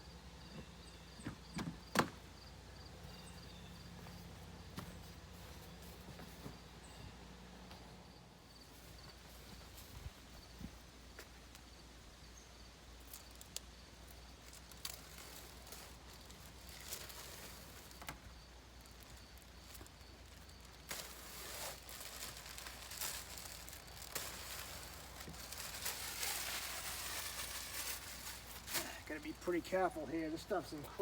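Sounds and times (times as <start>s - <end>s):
sticky paper rustling: 18.9s - 31.0s.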